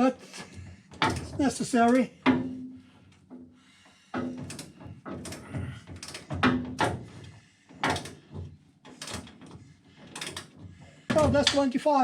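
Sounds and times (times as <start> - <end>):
wrenches knocking on nuts: 0.3 - 2.6, 10.2 - 11.7.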